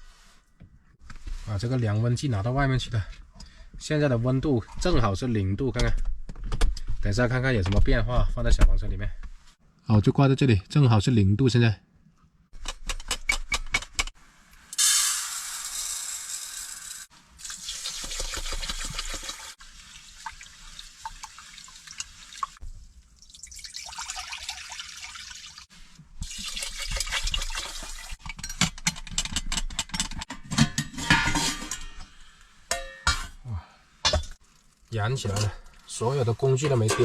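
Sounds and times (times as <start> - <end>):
water pouring and splashing: 15.0 - 28.2, 34.2 - 37.0
handling clicks and knocks: 28.2 - 31.8.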